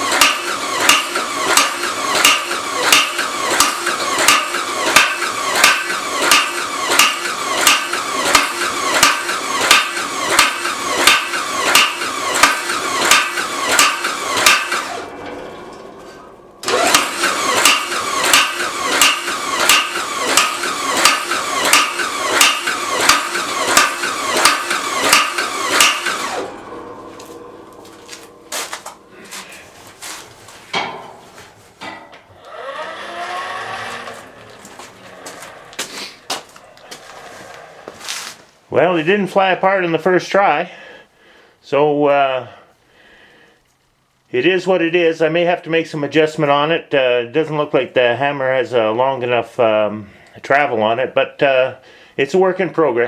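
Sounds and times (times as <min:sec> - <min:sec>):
power hammer clanging on metal: 0:00.0 - 0:37.6
scattered knocks: 0:00.1 - 0:29.6.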